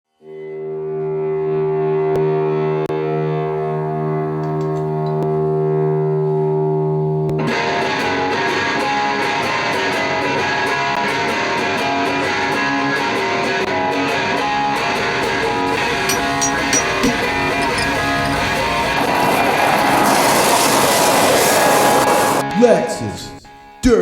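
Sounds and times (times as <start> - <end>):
rock music with distorted guitar: 6.6 - 20.0.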